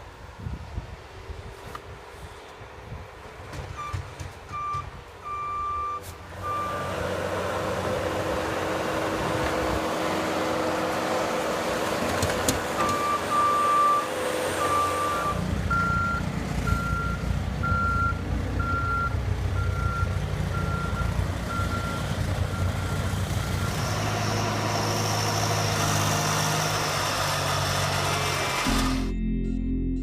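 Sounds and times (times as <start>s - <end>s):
vehicle reversing alarm beeping: 3.7s - 7.3s, 12.8s - 25.7s
lower-pitched backup beeper: 4.6s - 7.1s, 12.8s - 24.0s
engine running: 6.1s - 29.2s.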